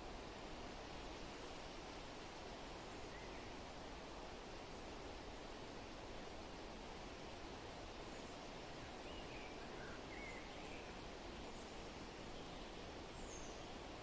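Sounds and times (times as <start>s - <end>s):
faint bird chirps: 2.8s - 3.6s, 8.0s - 13.9s.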